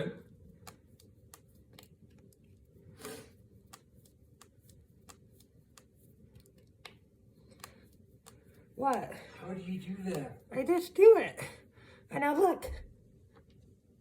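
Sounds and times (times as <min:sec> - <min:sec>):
knuckles cracking: 0:00.4 - 0:09.2.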